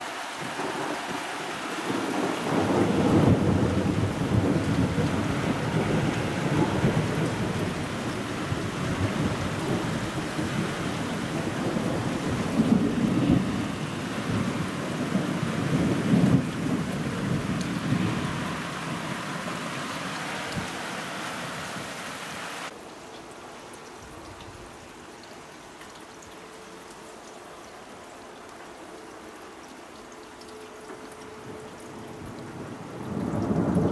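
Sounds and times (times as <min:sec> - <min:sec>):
heavy rain: 0:00.0 - 0:33.9
thunder rumbling: 0:01.8 - 0:22.0, 0:32.4 - 0:33.9.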